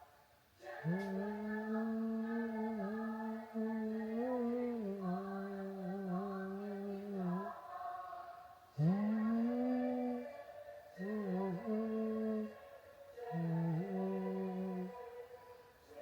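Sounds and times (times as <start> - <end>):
person humming in long held notes: 0.7 - 7.5, 8.8 - 10.4, 11.0 - 12.6, 13.2 - 15.2.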